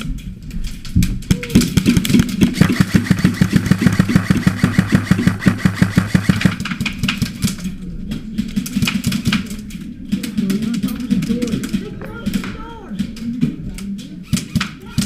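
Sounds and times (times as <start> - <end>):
airsoft gun full-auto firing: 1.8 - 7.1.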